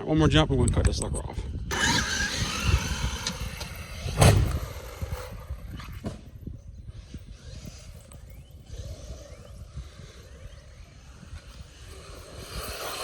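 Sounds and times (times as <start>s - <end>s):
electric motor and tyres: 1.4s - 13.0s
toy truck landing thump: 1.7s - 6.3s.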